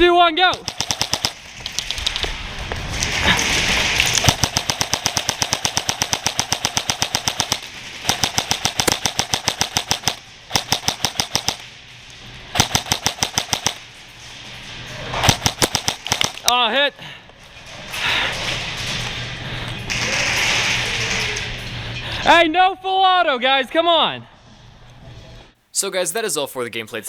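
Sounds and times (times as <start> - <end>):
airsoft guns rapid firing: 0.5 - 2.2, 3.6 - 11.7, 12.5 - 13.8, 15.2 - 16.5.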